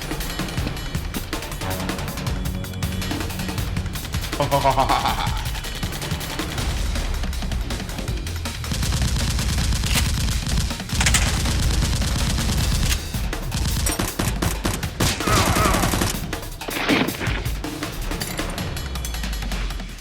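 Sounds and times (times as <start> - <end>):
background music: 0.0 - 20.0
rapid gunfire-like shots: 0.0 - 20.0.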